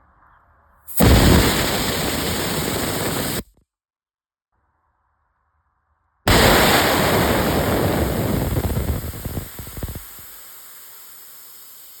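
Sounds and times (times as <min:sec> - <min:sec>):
compressed air hissing: 0:00.9 - 0:03.4, 0:06.3 - 0:12.0.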